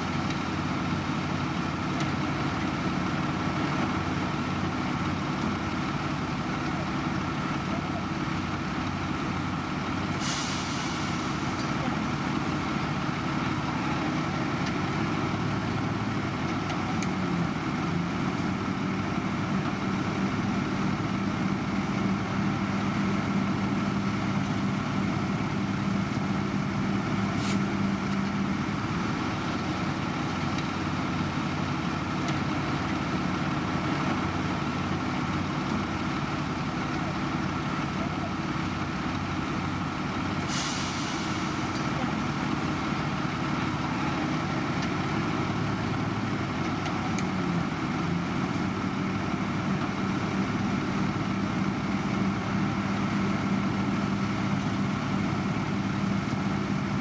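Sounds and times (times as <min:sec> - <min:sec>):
diesel construction machinery running: 0:00.0 - 0:57.0
air hiss: 0:10.2 - 0:11.5, 0:40.4 - 0:41.7.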